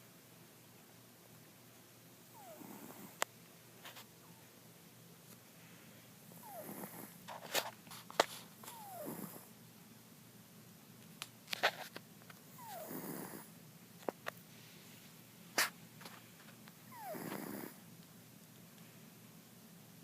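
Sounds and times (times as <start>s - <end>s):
cat snoring with whistle: 2.4s - 3.2s, 6.4s - 7.2s, 8.7s - 9.5s, 12.6s - 13.5s, 16.9s - 17.8s.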